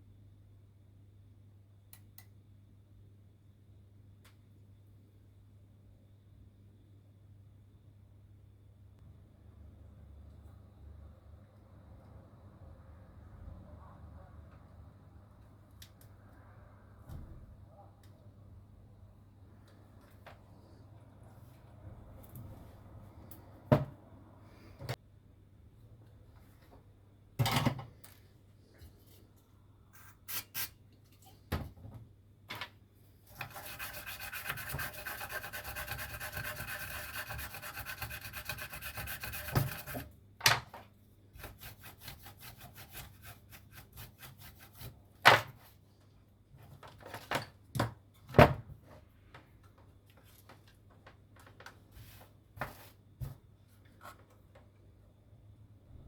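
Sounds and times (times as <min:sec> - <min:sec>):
faint electrical hum: 0:00.0 - 0:56.0
rapid light scrubbing: 0:33.3 - 0:40.1
scraping rub on circuit board: 0:33.3 - 0:40.1, 0:41.4 - 0:45.0.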